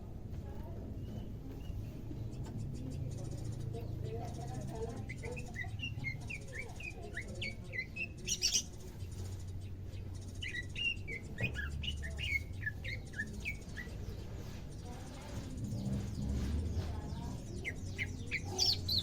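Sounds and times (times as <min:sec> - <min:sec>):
bird chirping: 0:01.0 - 0:19.0
harsh bird rasp: 0:04.4 - 0:19.0.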